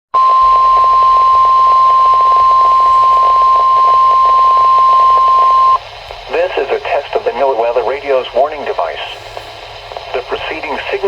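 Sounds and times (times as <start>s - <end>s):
high alarm beep: 0.2s - 5.8s
radio reception noise: 0.2s - 11.0s.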